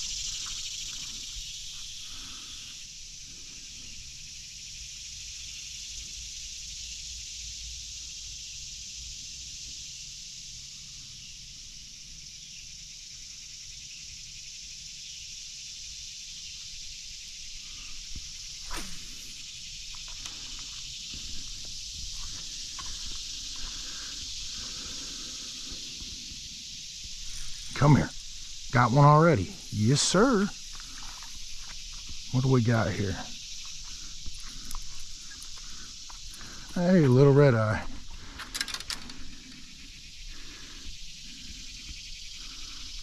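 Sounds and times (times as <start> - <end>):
insects chorus: 0.0 - 43.0.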